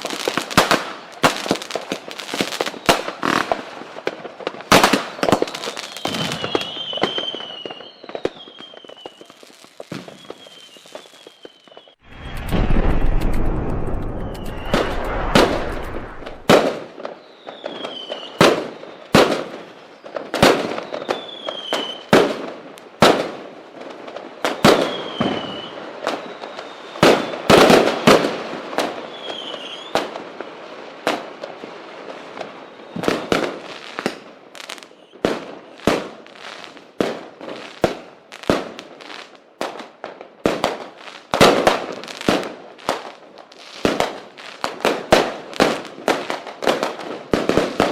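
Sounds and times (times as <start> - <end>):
fireworks bangs and pops: 0.0 - 47.9
falling firework whistles: 2.3 - 3.5, 4.8 - 22.1, 24.6 - 30.6, 32.2 - 36.7.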